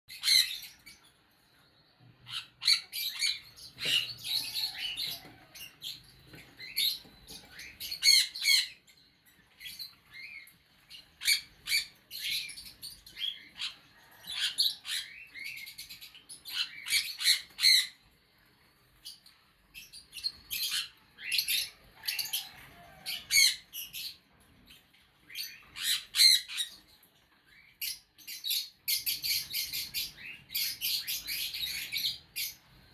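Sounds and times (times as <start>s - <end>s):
parrots chirping and squawking: 0.1s - 32.9s.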